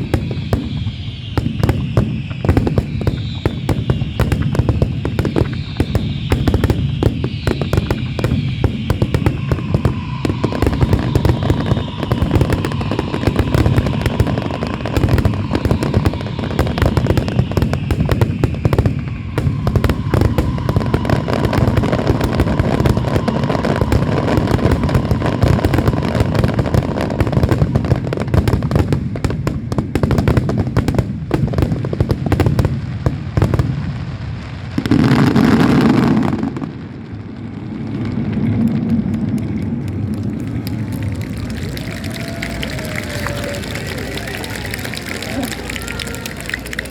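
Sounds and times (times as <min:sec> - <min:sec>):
loud rush: 0:00.0 - 0:30.3
fireworks bangs and crackles: 0:00.0 - 0:46.9
fireworks falling whistles: 0:00.0 - 0:46.9.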